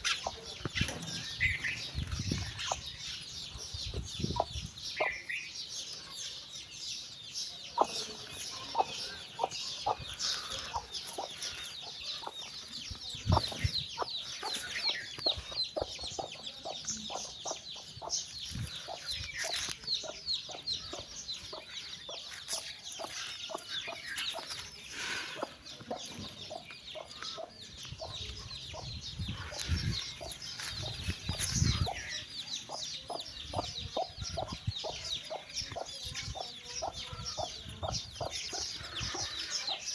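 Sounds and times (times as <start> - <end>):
chicks peeping: 0.0 - 39.9
hen clucking: 7.8 - 18.2.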